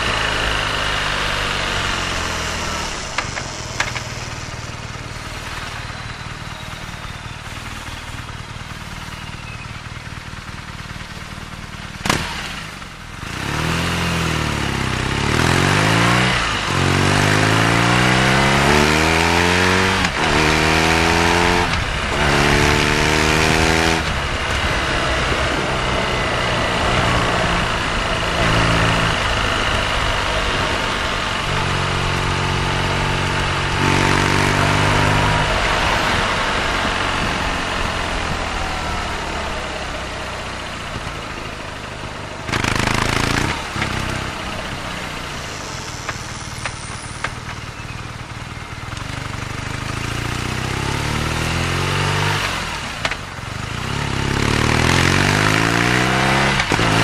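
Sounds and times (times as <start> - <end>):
motorcycle engine running: 0.0 - 57.0
wind and road noise: 0.0 - 57.0.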